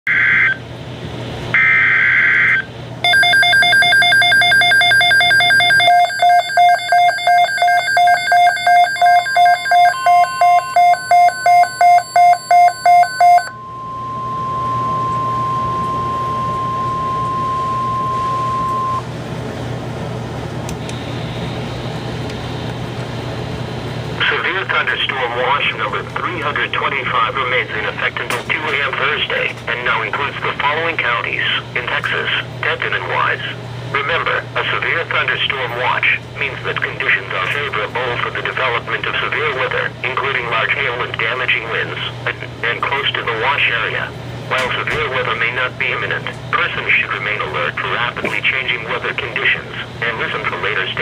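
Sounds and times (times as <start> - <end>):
alarm beeping in quick pulses: 1.6 - 19.0
steady warning alarm tone: 1.6 - 19.1
radio static hum: 24.2 - 51.0.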